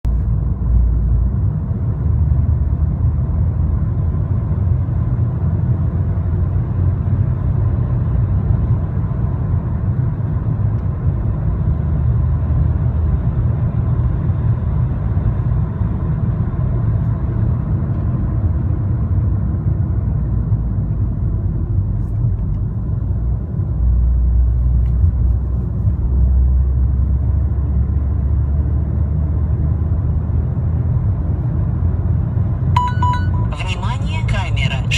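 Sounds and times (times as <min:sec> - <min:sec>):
car engine low rumble: 0:00.0 - 0:34.9
faint constant high tone: 0:32.8 - 0:34.2.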